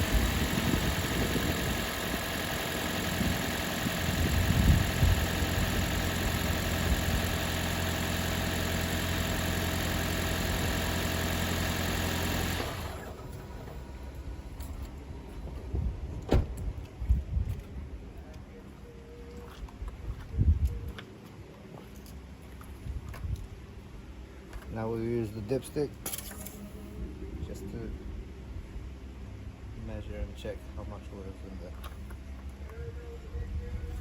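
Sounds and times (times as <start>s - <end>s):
car engine idling: 0.0s - 14.5s.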